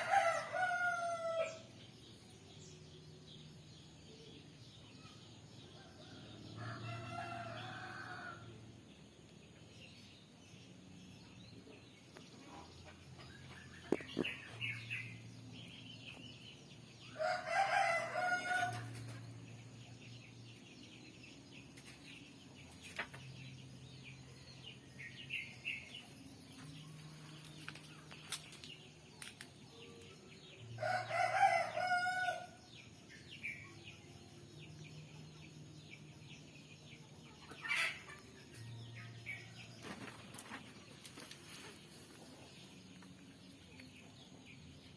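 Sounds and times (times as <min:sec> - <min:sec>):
rooster crowing: 0:00.0 - 0:01.6, 0:17.2 - 0:18.8, 0:30.8 - 0:32.5.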